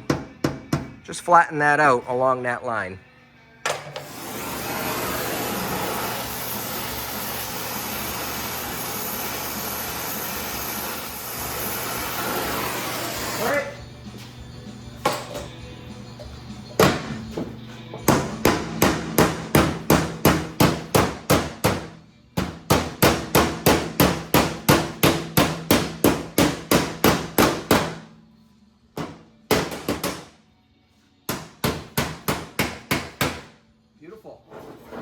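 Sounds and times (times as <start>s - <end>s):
hammer striking sheet steel: 18.1s - 28.1s.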